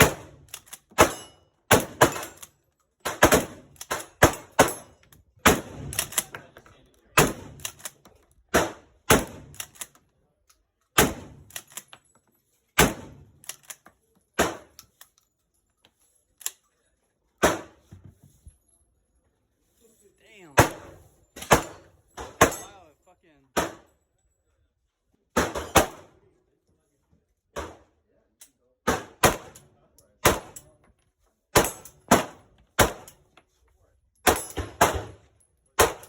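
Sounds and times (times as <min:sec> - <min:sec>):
gunshots with ringing echo: 0:01.0 - 0:02.4, 0:03.1 - 0:06.1, 0:07.2 - 0:07.6, 0:20.6 - 0:22.7, 0:23.6 - 0:23.9, 0:25.4 - 0:26.1, 0:28.9 - 0:29.6, 0:30.2 - 0:30.6, 0:31.6 - 0:33.2, 0:34.2 - 0:35.2, 0:35.8 - 0:36.0.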